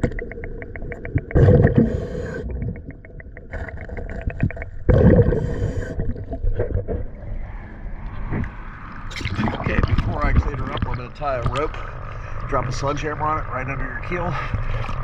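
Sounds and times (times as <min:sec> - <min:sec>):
fast even ticking: 0:00.0 - 0:04.9
exhaled bubbles rushing: 0:00.0 - 0:07.6, 0:08.2 - 0:15.0
diver breathing through gear: 0:01.6 - 0:02.6, 0:05.2 - 0:06.2.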